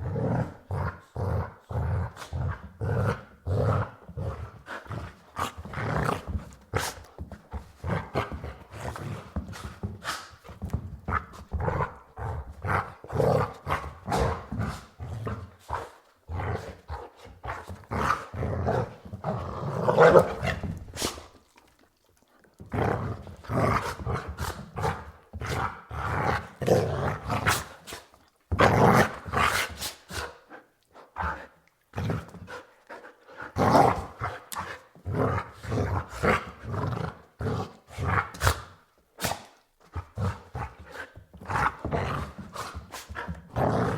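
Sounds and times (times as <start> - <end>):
dog barking and growling: 11.1 - 30.4.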